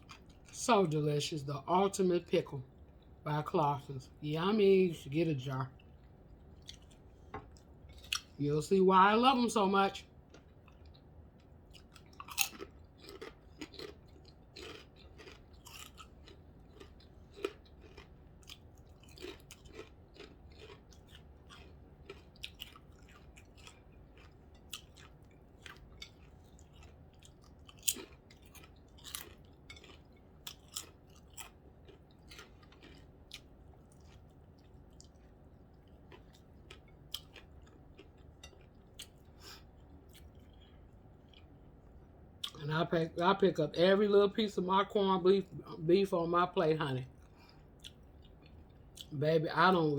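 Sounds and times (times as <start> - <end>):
person chewing a sandwich: 0.0 - 0.6, 5.8 - 8.4, 10.1 - 42.6, 47.1 - 49.2.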